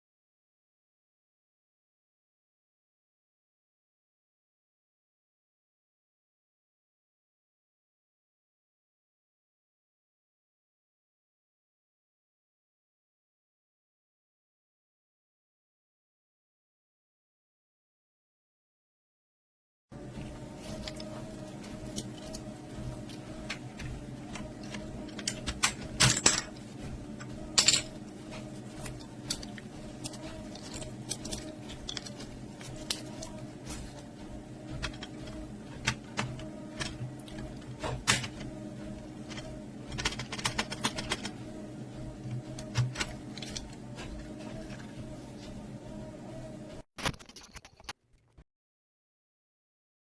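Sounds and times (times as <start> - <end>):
low hum: 19.9 - 46.8.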